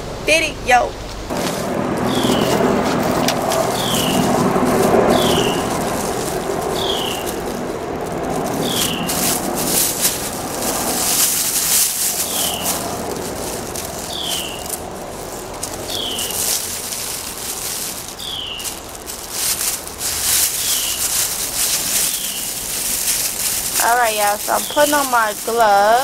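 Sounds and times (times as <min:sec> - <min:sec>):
steady rushing noise: 0:00.0 - 0:26.0
scattered crackles: 0:01.2 - 0:26.0.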